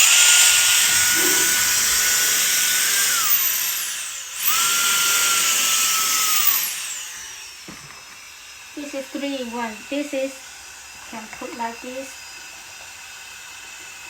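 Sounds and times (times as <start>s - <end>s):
turbo fan motor whine: 0.0s - 13.1s.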